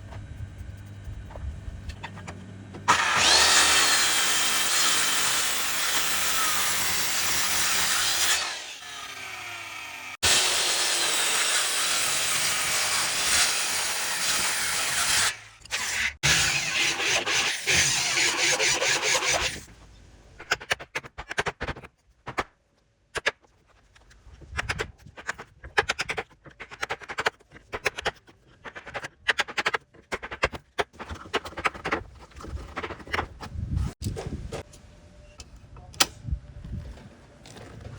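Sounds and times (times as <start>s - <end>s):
power tool cutting wood: 2.9s - 19.6s
knocks and scrapes in wood: 23.2s - 34.7s.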